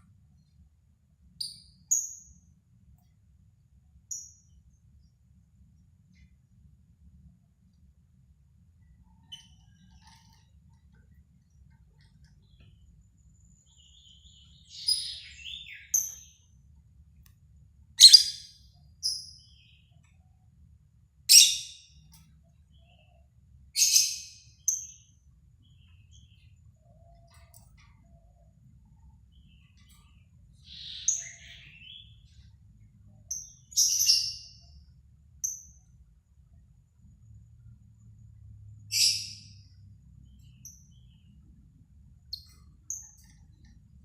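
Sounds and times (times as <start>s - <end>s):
lovebirds chirping and squawking: 9.2s - 10.6s, 13.7s - 16.4s, 18.0s - 19.9s, 21.3s - 21.9s, 23.8s - 25.0s, 29.3s - 32.5s, 33.3s - 34.7s, 38.9s - 39.7s.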